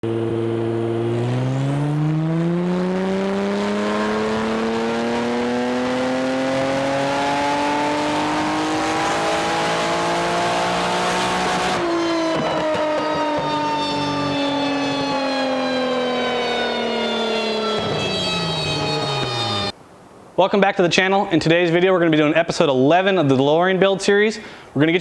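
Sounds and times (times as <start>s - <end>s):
car engine revving: 0.0s - 19.8s.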